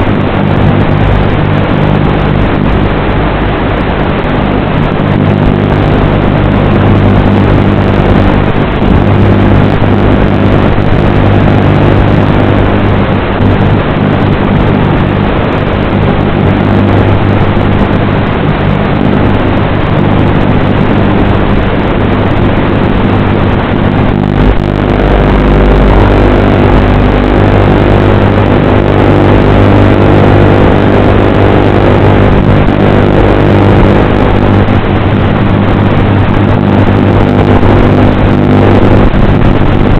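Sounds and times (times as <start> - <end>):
electric motor hum: 0.0 - 39.9
low rumble: 0.0 - 39.9.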